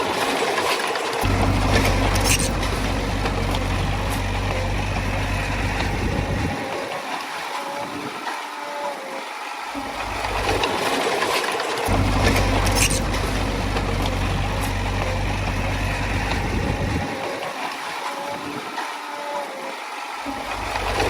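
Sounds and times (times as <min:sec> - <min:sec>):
diesel machinery rumbling: 0:00.0 - 0:06.9, 0:09.8 - 0:17.4, 0:20.3 - 0:21.0.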